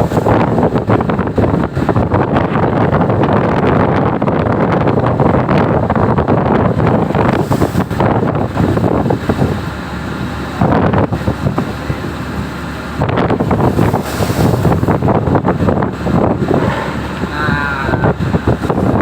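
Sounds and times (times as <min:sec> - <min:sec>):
strong wind buffeting microphone: 0:00.0 - 0:19.0
waves washing around ship: 0:00.0 - 0:19.0.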